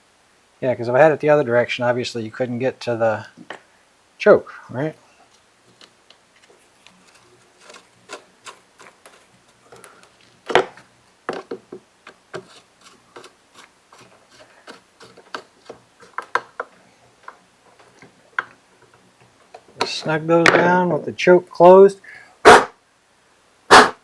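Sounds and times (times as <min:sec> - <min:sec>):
small clicks and knocks of hand work: 0:05.3 - 0:20.0.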